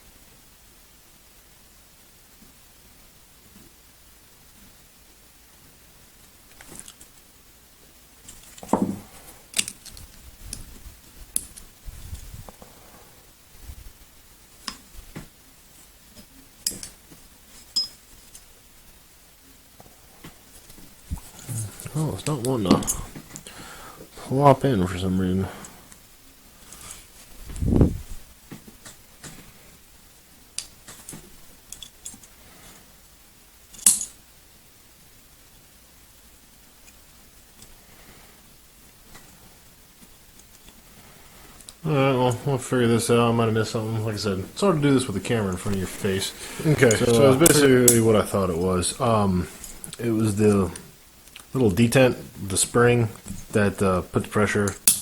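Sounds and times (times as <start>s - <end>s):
metal pistol parts clicking: 9.5s - 10.0s, 33.7s - 34.2s, 54.7s - 55.0s.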